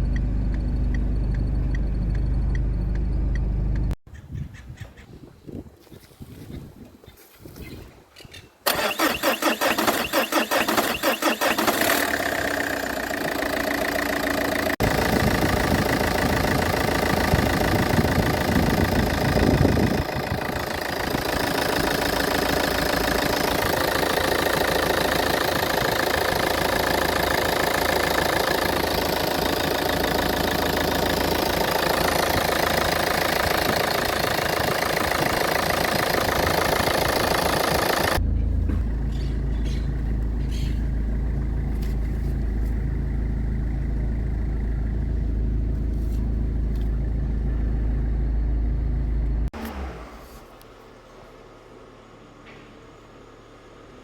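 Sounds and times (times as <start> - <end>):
car starter cranking: 8.7 - 40.7
car engine idling roughly: 8.7 - 49.3.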